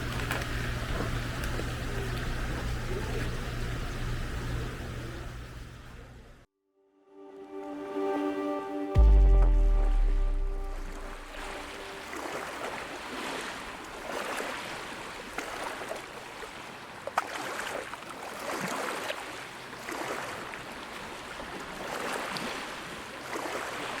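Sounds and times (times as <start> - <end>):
water sloshing and splashing: 10.6 - 24.0.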